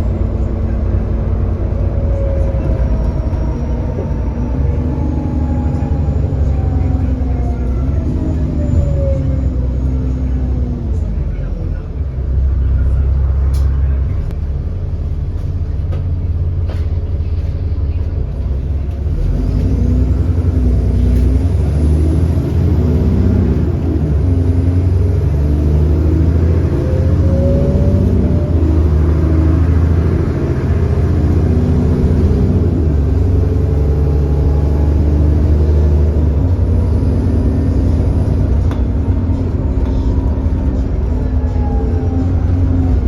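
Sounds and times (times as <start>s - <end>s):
bus diesel engine pulling: 0.0s - 43.0s.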